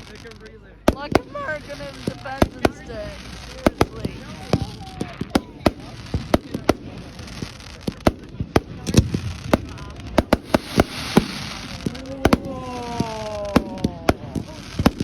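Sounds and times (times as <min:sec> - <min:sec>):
distant fireworks hiss: 0:00.0 - 0:15.0
fireworks banging and popping: 0:00.0 - 0:15.0.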